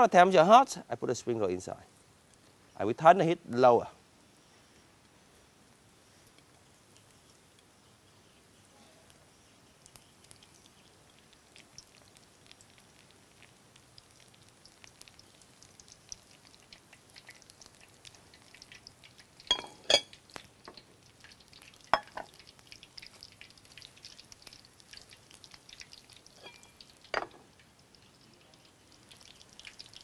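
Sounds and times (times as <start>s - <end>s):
deep-frying sizzle: 4.4s - 30.0s
utensil clacking on pan: 19.4s - 20.9s, 21.9s - 22.4s, 26.3s - 27.5s.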